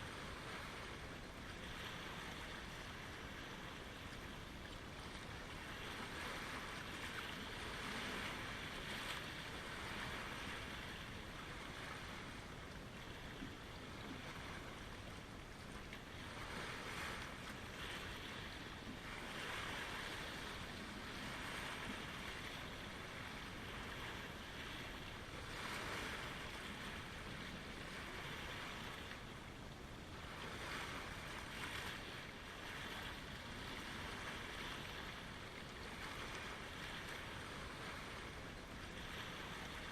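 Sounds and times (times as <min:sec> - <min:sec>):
waves lapping at shoreline: 0:00.0 - 0:39.9.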